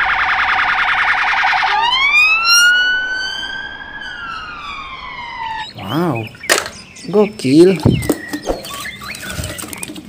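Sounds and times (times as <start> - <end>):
electronic police siren: 0.0 - 6.6.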